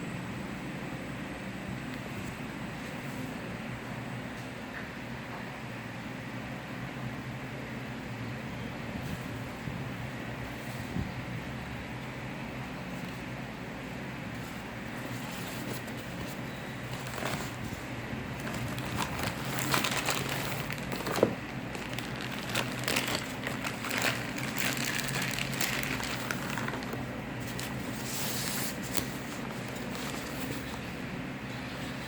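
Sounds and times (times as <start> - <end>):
steady low hum: 0.0 - 32.0
packaging crinkling and rustling: 14.4 - 31.0.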